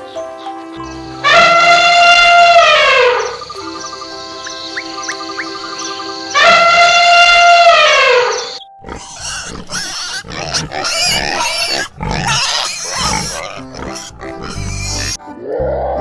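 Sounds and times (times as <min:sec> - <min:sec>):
steady musical notes: 0:00.0 - 0:08.8
drawn-out falling animal call: 0:00.6 - 0:16.0.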